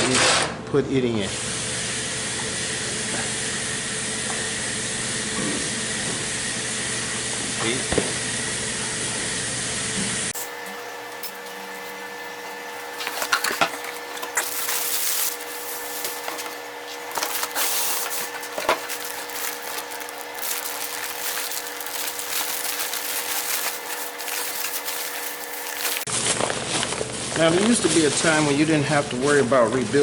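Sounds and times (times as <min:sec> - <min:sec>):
parts rubbing together: 0:10.4 - 0:26.1
steady hum: 0:10.4 - 0:26.1.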